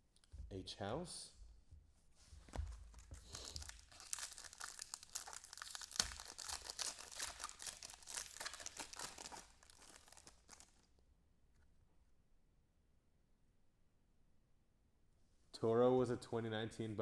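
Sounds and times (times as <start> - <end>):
foil wrappers crinkling and tearing: 2.9 - 10.9.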